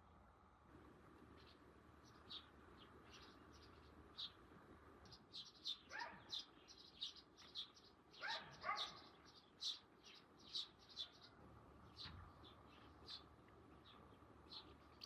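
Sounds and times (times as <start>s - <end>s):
small birds chirping: 1.2s - 15.0s
dog barks: 5.9s - 6.3s, 8.2s - 9.0s.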